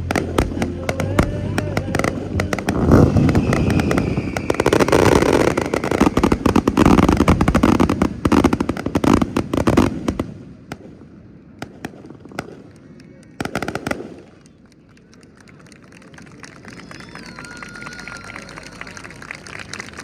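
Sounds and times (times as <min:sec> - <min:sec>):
fireworks booming and crackling: 0:00.0 - 0:14.5.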